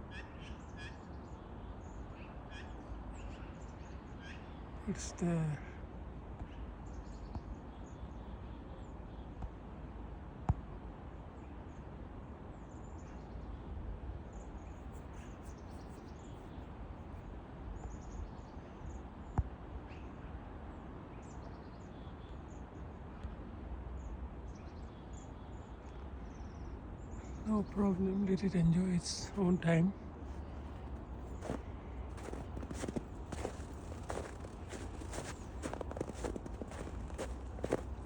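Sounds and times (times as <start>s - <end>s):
small birds chirping: 24.6s - 38.0s.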